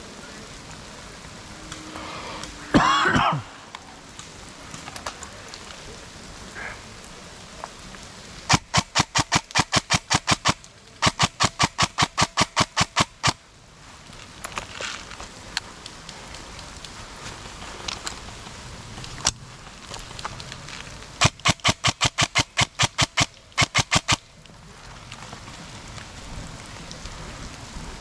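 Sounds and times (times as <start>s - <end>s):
rain pattering: 0.0s - 28.0s
person coughing: 2.6s - 3.6s
rapid airsoft fire: 8.5s - 13.4s, 21.2s - 24.2s.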